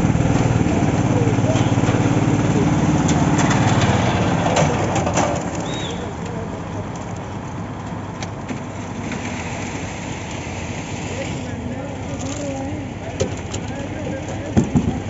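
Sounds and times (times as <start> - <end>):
small engine running: 0.0 - 6.9, 8.6 - 15.0
bird chirp: 5.6 - 6.1.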